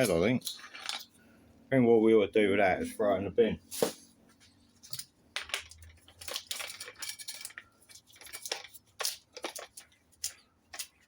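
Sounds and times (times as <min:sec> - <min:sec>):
hand tools clinking: 0:04.9 - 0:11.0.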